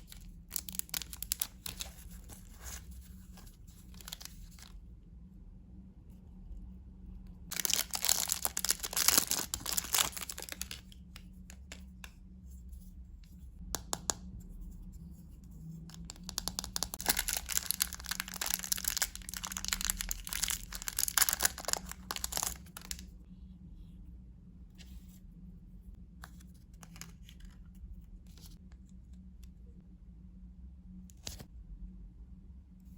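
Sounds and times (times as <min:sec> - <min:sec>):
foil wrapper crinkling: 0:00.0 - 0:02.5, 0:03.9 - 0:04.7, 0:07.5 - 0:11.0, 0:16.4 - 0:23.0.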